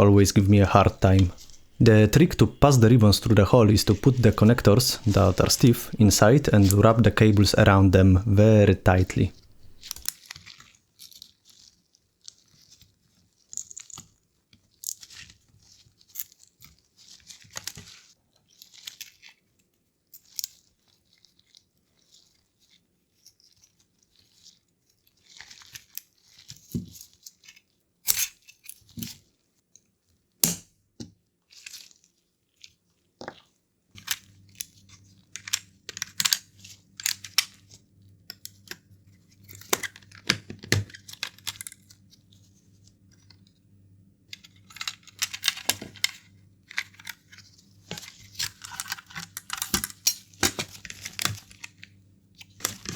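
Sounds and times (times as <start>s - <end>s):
low steady hum: 0.0s - 10.0s
plastic parts clicking and scraping: 0.6s - 10.1s, 34.0s - 42.5s, 44.3s - 52.9s.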